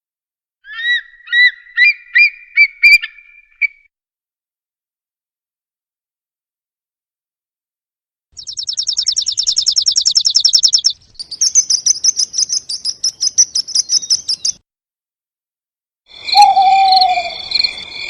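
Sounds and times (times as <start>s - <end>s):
songbird singing: 0.7s - 3.7s, 8.4s - 14.6s, 16.1s - 18.0s.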